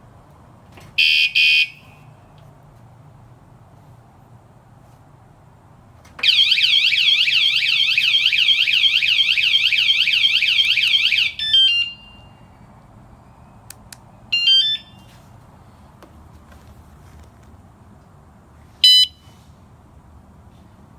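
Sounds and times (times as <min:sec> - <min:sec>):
motorcycle alarm siren warbling: 0:01.0 - 0:01.9, 0:06.2 - 0:12.4, 0:14.3 - 0:15.0
alarm chirp: 0:01.0 - 0:02.0, 0:06.2 - 0:12.5, 0:14.3 - 0:15.1, 0:18.8 - 0:19.3.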